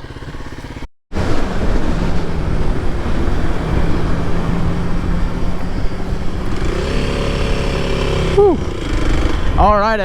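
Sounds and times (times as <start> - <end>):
motorcycle engine running: 0.0 - 10.0
wind rush on microphone: 1.1 - 10.0.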